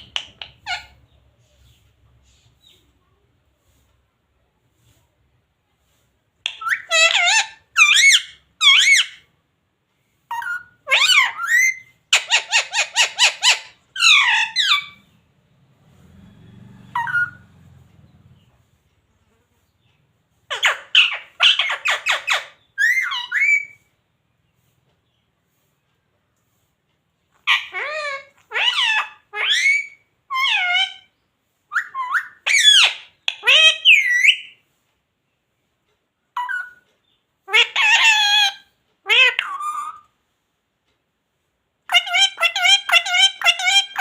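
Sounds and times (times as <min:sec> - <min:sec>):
parrot squawking and chattering: 0:00.0 - 0:01.8, 0:06.4 - 0:09.3, 0:10.3 - 0:15.2, 0:16.9 - 0:17.7, 0:20.4 - 0:23.9, 0:27.3 - 0:34.6, 0:36.3 - 0:40.2, 0:41.9 - 0:44.0.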